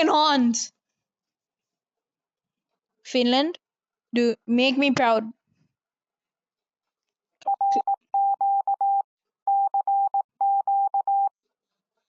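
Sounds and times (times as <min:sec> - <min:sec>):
electronic alert beeps: 0:07.5 - 0:11.3.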